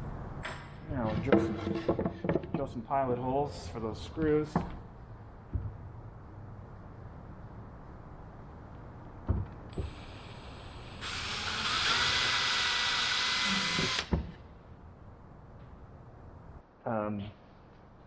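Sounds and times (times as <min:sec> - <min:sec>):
power drill whining: 0:09.8 - 0:14.1.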